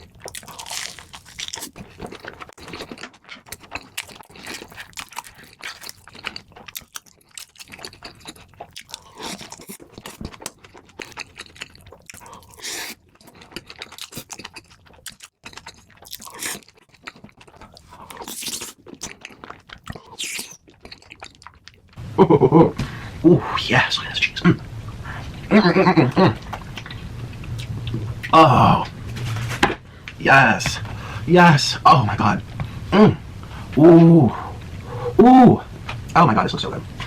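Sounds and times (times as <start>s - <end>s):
chewing crunchy food: 0.0s - 22.0s
person speaking: 22.2s - 26.5s, 28.2s - 29.0s, 30.2s - 36.9s.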